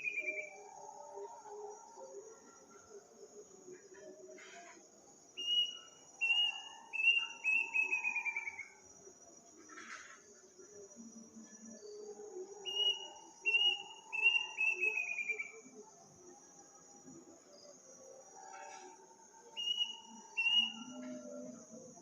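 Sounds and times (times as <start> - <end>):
bird whistled calls: 0.0 - 0.5, 5.4 - 8.7, 12.7 - 15.6, 19.6 - 21.0
crickets droning: 0.0 - 22.0.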